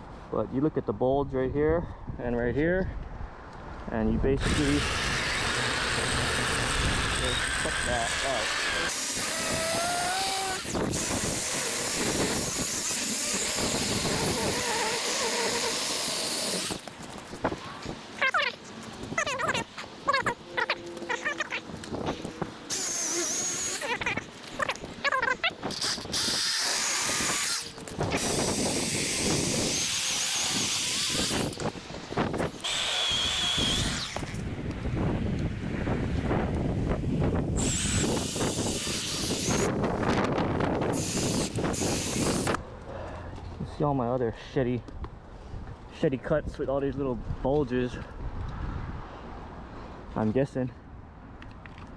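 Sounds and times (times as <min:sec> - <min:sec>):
saw cutting branch: 0:04.4 - 0:34.5, 0:37.6 - 0:42.6.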